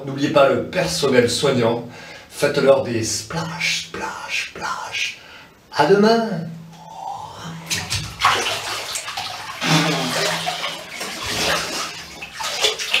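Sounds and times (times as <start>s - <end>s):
water splashing and sloshing: 7.6s - 13.0s.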